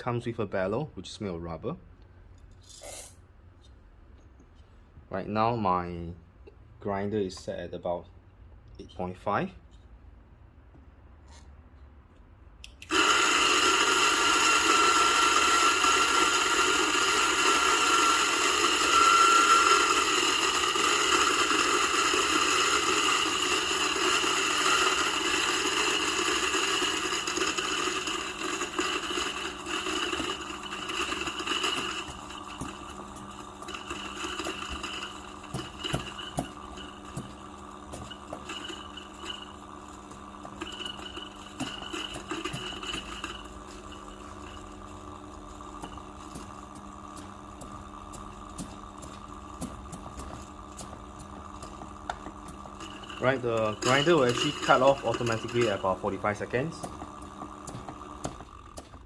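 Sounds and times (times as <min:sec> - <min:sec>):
coffee grinder whirring: 0:12.7 - 0:59.0
grinder burrs rattling and clicking: 0:19.9 - 0:59.0.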